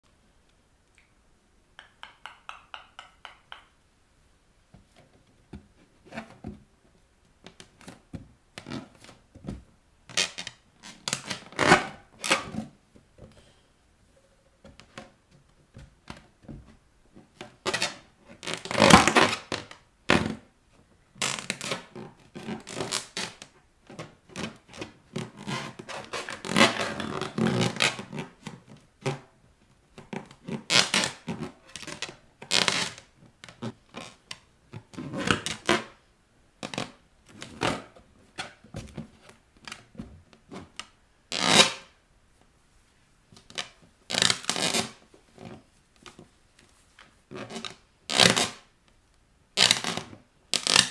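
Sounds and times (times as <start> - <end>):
balloons squeaking under feet: 41.3 - 41.9.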